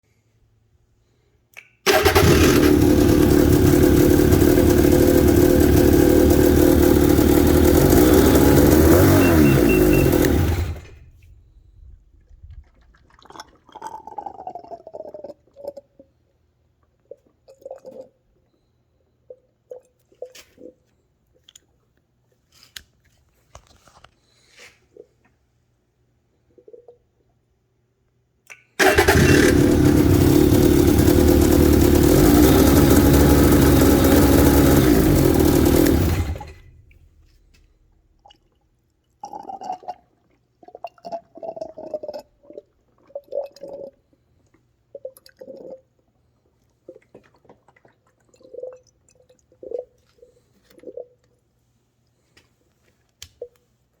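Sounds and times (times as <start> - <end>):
snowmobile engine running: 1.9 - 11.0, 28.9 - 36.7
coolant gurgling: 1.9 - 16.1, 28.8 - 51.2.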